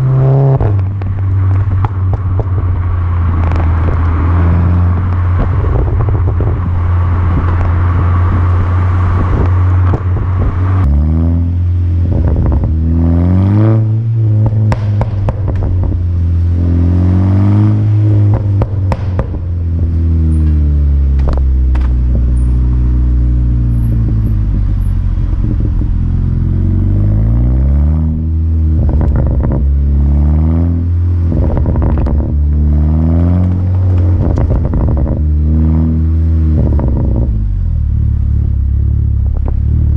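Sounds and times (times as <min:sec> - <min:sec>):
car engine revving: 0:00.0 - 0:39.9
exhaust crackles and pops: 0:00.0 - 0:39.9.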